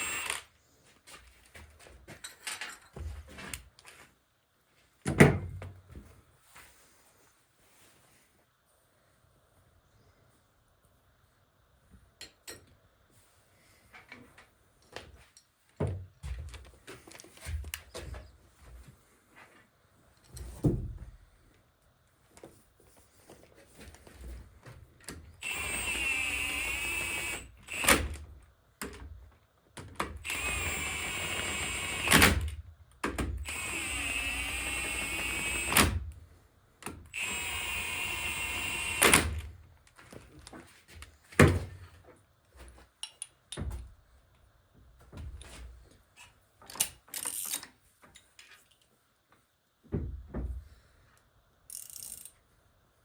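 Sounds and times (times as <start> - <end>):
power drill running: 0.0 - 0.5, 25.4 - 28.0, 30.2 - 32.4, 33.4 - 36.0, 37.1 - 39.4
tools knocking and clinking: 2.1 - 3.2, 12.2 - 12.8.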